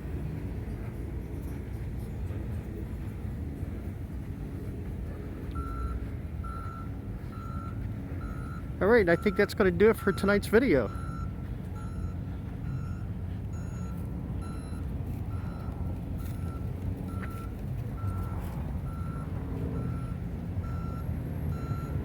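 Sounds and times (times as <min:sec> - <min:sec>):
engine and traffic rumble: 0:00.0 - 0:22.0
reversing alarm beeping: 0:05.5 - 0:22.0.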